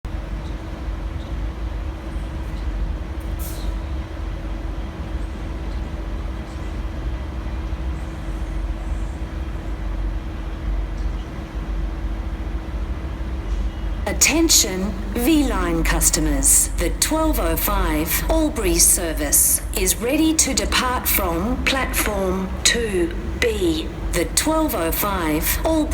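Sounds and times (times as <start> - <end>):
diesel locomotive idling: 14.1 - 25.9.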